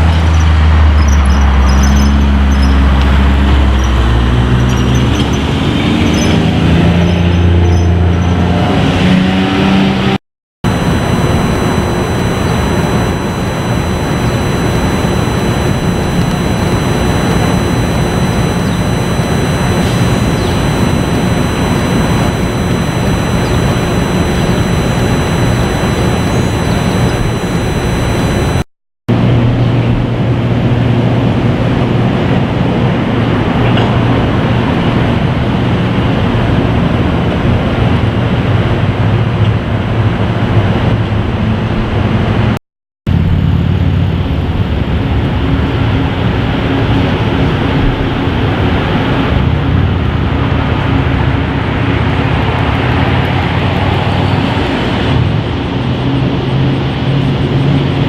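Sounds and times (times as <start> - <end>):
city street traffic: 0.0 - 10.0.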